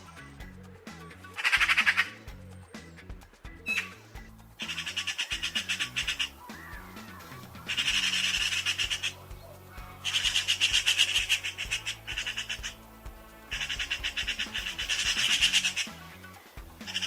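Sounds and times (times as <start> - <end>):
background music: 0.0 - 17.0
magpie chattering: 1.3 - 2.2, 3.7 - 4.0, 4.6 - 12.9, 13.5 - 17.0.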